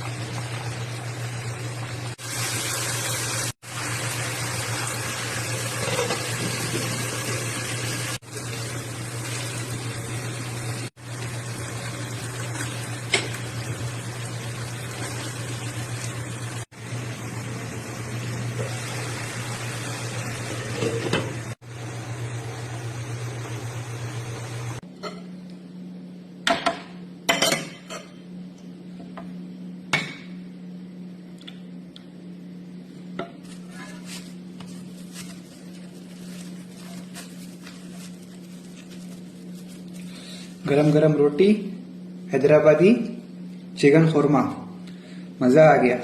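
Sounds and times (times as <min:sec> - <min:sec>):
appliance hum: 0:00.0 - 0:46.0.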